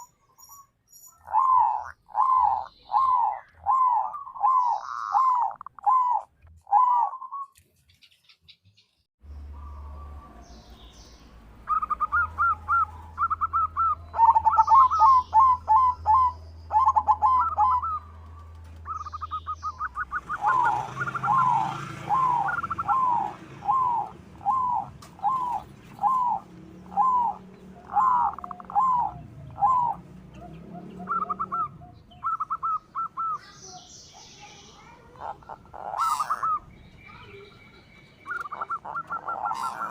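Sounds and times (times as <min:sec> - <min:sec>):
dove cooing: 0:01.3 - 0:07.4, 0:11.7 - 0:18.2, 0:18.8 - 0:33.5, 0:34.9 - 0:37.2, 0:38.2 - 0:39.9.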